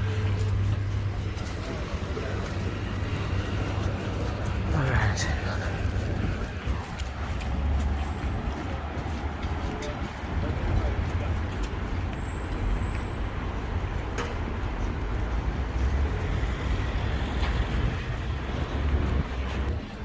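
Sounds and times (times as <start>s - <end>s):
road traffic rumble: 0.0s - 20.0s.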